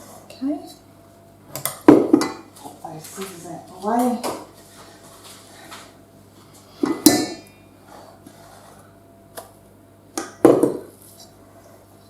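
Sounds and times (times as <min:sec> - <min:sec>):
dishes clattering: 0:01.8 - 0:02.5, 0:06.8 - 0:07.5.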